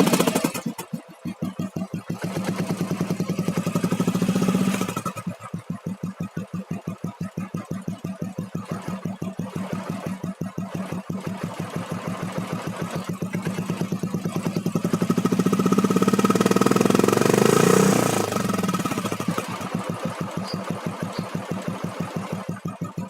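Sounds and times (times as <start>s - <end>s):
motorcycle engine idling: 0.0s - 23.0s
motorcycle engine revving: 0.0s - 23.0s.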